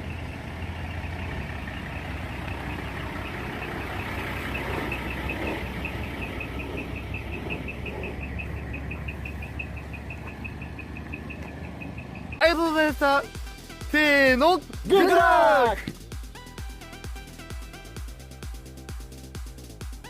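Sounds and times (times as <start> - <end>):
diesel truck engine idling: 0.0 - 15.8.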